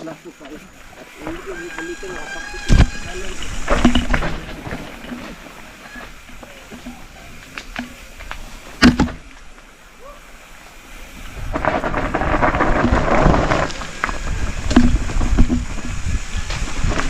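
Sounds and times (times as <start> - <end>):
bike tyres rolling over rocky trail: 0.0 - 17.0
wind on microphone: 1.2 - 6.1, 11.1 - 17.0.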